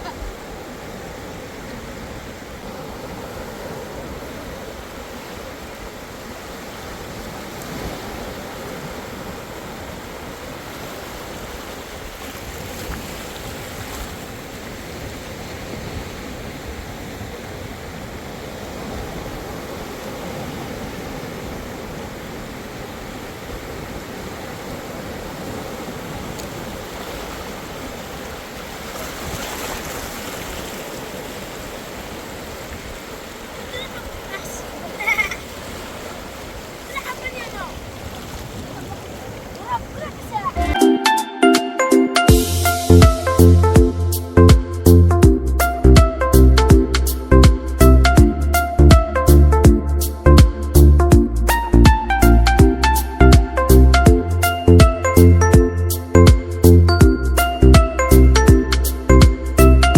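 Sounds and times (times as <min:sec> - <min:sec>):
sea waves breaking on shore: 0:00.0 - 0:44.7
wind rumbling on microphone: 0:37.6 - 0:40.8.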